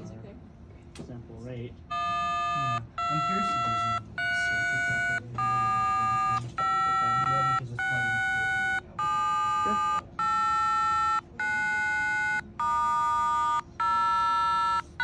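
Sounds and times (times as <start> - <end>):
telephone keypad tones: 1.9 - 15.0.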